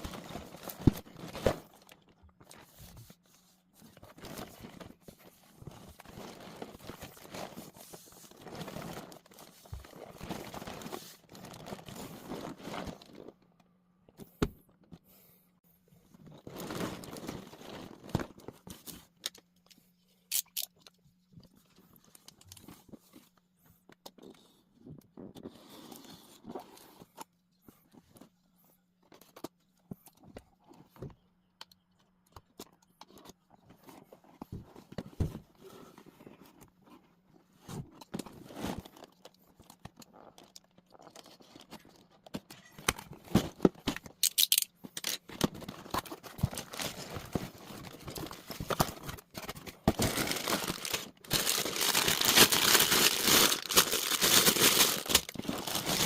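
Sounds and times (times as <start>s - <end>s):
plastic bags crinkling and tearing: 4.1s - 13.4s, 42.7s - 56.0s.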